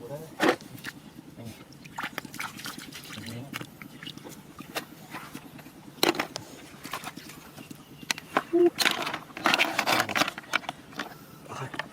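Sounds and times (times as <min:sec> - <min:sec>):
clicks and rustling: 0:08.1 - 0:11.1.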